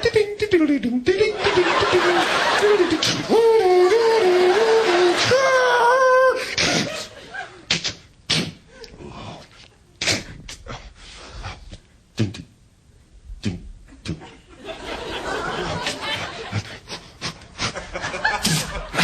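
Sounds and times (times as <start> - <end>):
man imitating siren: 1.5 - 6.5
vocal sound effects: 13.4 - 14.3.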